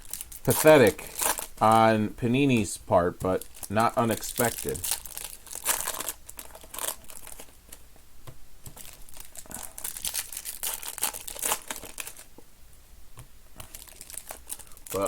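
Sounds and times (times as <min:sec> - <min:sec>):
card pack wrappers crinkling: 0:00.0 - 0:07.9, 0:08.6 - 0:12.3, 0:13.6 - 0:15.0.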